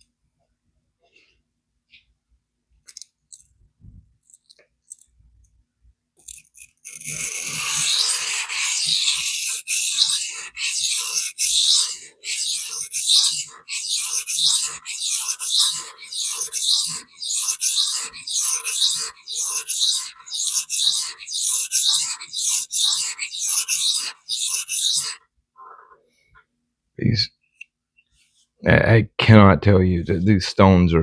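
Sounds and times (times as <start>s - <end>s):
knife scraping on sharpening stone: 6.3s - 25.2s.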